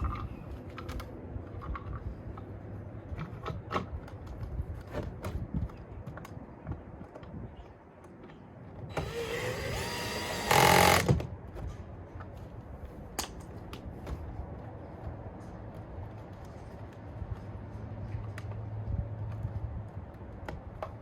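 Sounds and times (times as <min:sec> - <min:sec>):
cordless drill whining: 0:08.9 - 0:11.2.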